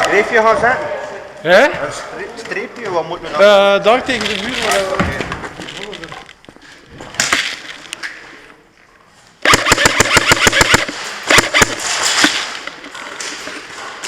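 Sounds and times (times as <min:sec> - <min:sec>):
airsoft gun shots: 0:09.4 - 0:12.7.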